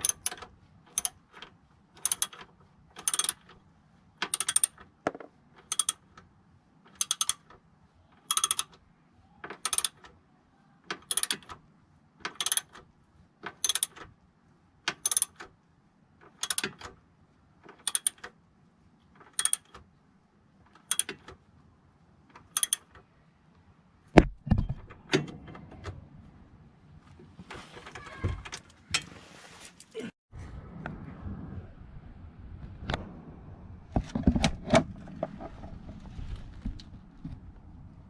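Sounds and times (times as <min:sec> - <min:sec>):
ratchet wrench clicking: 0:00.0 - 0:01.2, 0:02.0 - 0:02.4, 0:03.0 - 0:03.5, 0:04.2 - 0:04.8, 0:05.7 - 0:06.0, 0:07.0 - 0:07.5, 0:08.3 - 0:08.7, 0:09.6 - 0:10.0, 0:11.0 - 0:11.5, 0:12.3 - 0:12.8, 0:13.6 - 0:14.0, 0:15.0 - 0:15.4, 0:16.4 - 0:16.8, 0:17.9 - 0:18.3, 0:19.4 - 0:19.8, 0:20.8 - 0:21.2, 0:22.5 - 0:22.9.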